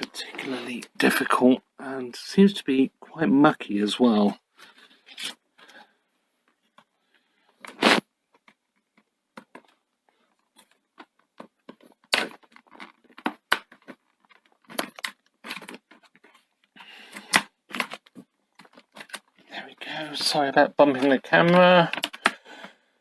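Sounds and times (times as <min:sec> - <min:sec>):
plastic case being pried open: 0:10.6 - 0:16.5, 0:17.1 - 0:19.5, 0:20.9 - 0:22.4
plastic clips snapping: 0:17.1 - 0:19.3, 0:20.9 - 0:22.4.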